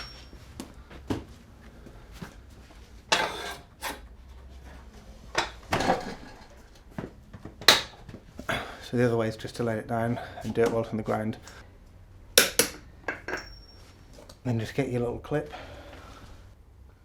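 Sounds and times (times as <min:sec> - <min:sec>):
metallic clanks and scrapes: 0:00.0 - 0:00.4, 0:03.1 - 0:06.7.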